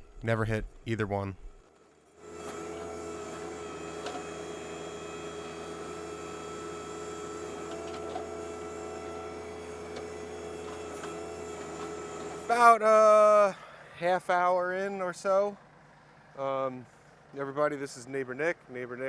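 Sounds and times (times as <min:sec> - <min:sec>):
tractor diesel engine running: 0:01.5 - 0:14.5.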